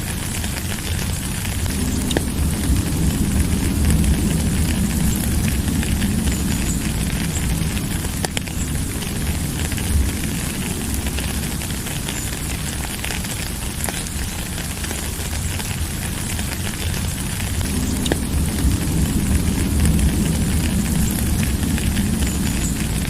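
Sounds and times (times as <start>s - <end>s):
low rumble: 0.0s - 23.0s
rain pattering: 0.0s - 23.0s
single raindrop ticks: 16.4s - 23.0s.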